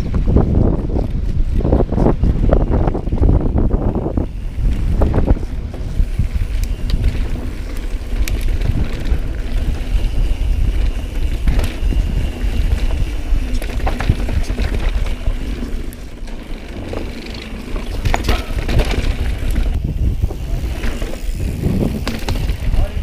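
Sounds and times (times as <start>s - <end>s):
tyres rumbling on dirt trail: 0.0s - 23.0s
wind buffeting camera: 0.0s - 23.0s
bike knocks and rattles: 4.6s - 23.0s.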